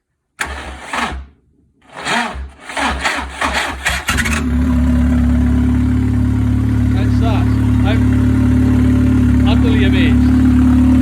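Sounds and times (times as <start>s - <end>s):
starter motor cranking: 0.4s - 4.5s
loud engine idling: 1.9s - 11.0s.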